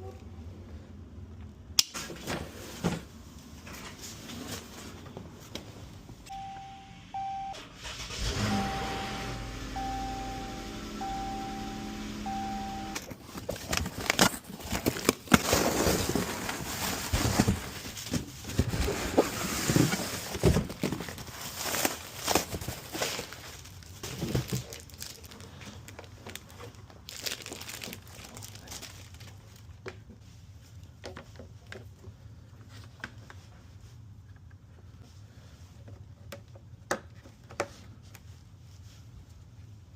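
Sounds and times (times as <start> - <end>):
rustling and crinkling: 2.2 - 6.2, 13.1 - 39.9.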